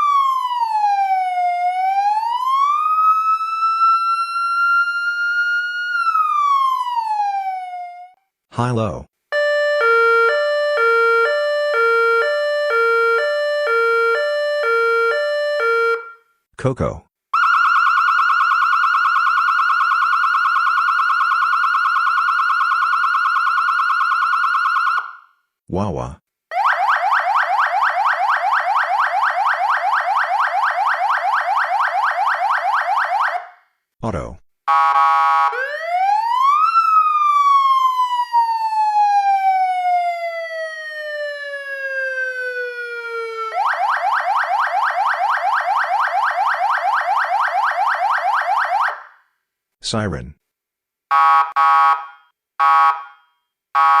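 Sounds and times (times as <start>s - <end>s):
electronic siren wailing: 0.0s - 8.2s, 9.3s - 16.2s, 17.4s - 25.2s, 26.5s - 33.5s, 34.7s - 49.1s, 51.1s - 53.2s, 53.8s - 54.0s
electronic siren warbling: 9.4s - 16.2s.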